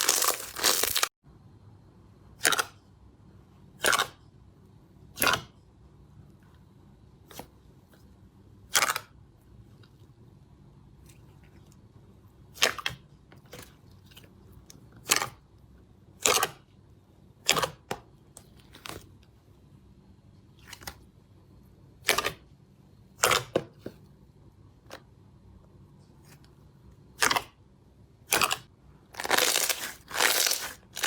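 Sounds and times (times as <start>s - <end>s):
slime popping and crackling: 0.0s - 1.1s, 29.2s - 31.0s.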